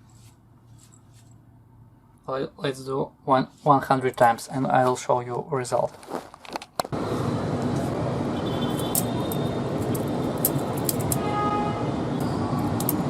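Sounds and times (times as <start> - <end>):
steady traffic rumble: 0.0 - 13.0.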